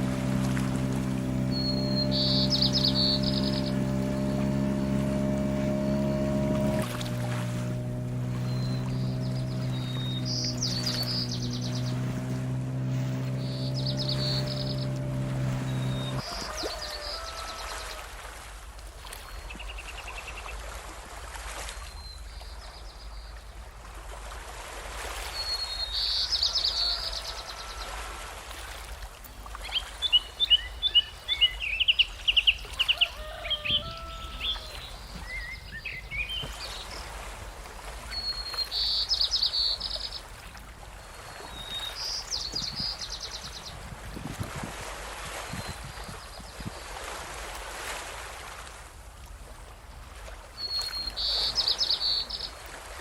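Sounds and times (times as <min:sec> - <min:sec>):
songbirds trilling: 0:00.0 - 0:18.2, 0:25.4 - 0:28.4, 0:29.4 - 0:44.0, 0:50.6 - 0:52.7
rapid bird chirping: 0:01.5 - 0:05.0, 0:08.3 - 0:16.4.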